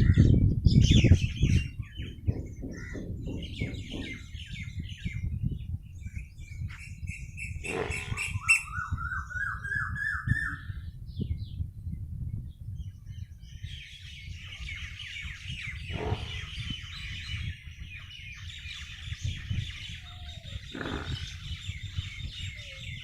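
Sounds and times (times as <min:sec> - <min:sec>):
birds chirping: 0:00.0 - 0:11.6, 0:12.8 - 0:23.0.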